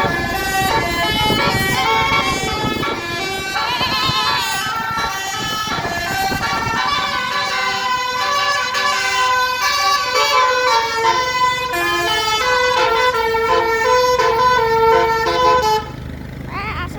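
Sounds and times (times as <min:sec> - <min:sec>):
musical bus horn playing a tune: 0:00.0 - 0:16.2.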